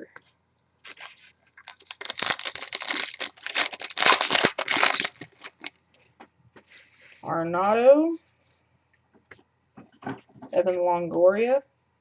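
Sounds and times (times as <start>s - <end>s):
wrapper tearing and crinkling: 0.8s - 5.7s.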